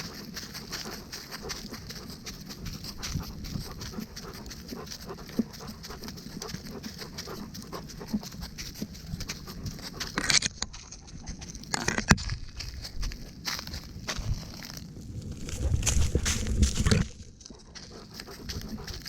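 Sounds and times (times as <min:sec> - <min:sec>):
dog panting: 0:00.0 - 0:11.7, 0:15.4 - 0:19.0
rustling scrape: 0:06.3 - 0:19.0.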